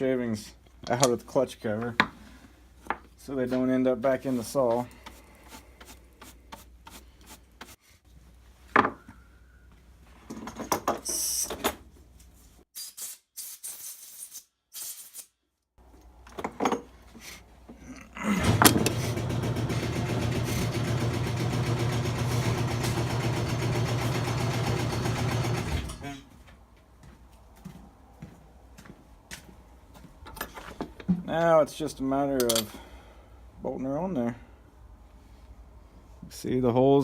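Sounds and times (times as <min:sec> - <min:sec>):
motor humming: 0:18.4 - 0:25.9.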